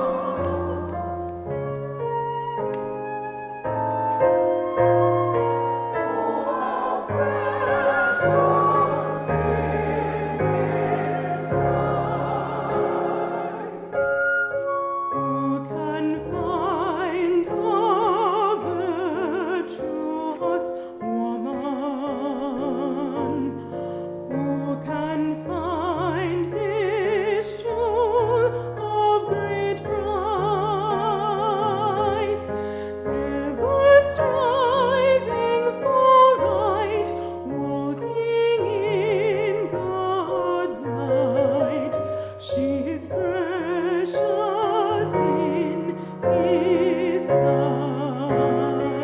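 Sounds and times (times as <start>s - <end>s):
operatic singing with vibrato: 0.0s - 2.2s, 4.7s - 14.2s.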